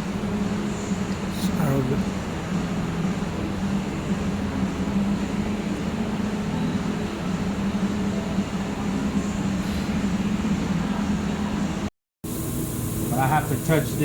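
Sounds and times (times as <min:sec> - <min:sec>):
machinery drone: 0:12.3 - 0:14.0.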